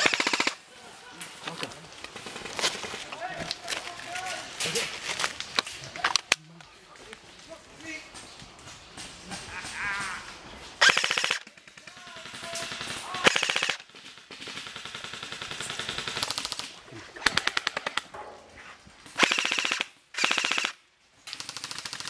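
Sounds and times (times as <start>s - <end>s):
airsoft rifle full-auto bursts: 0.0s - 0.6s, 10.8s - 17.8s, 19.2s - 20.8s.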